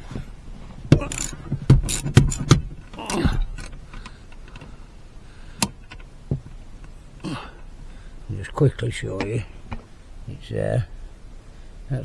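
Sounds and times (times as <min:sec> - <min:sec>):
sharp knocks: 0:00.9 - 0:03.7
metal tools clinking: 0:00.9 - 0:04.6.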